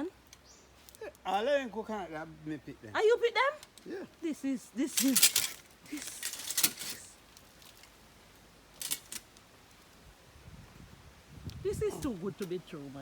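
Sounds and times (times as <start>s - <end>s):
metal climber clinking and rattling: 4.9s - 7.9s, 8.8s - 9.3s.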